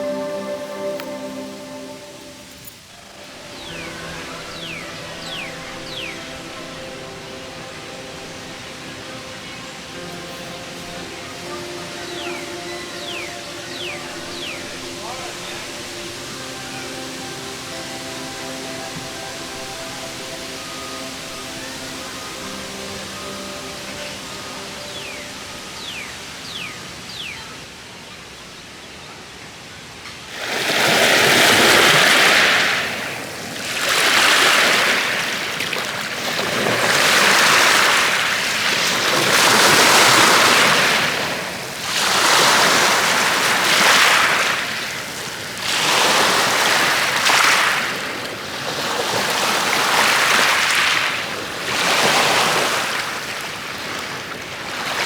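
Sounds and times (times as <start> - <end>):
faint bird chirps: 0.0 - 18.4, 19.6 - 29.2
waves breaking on a beach: 0.0 - 55.0.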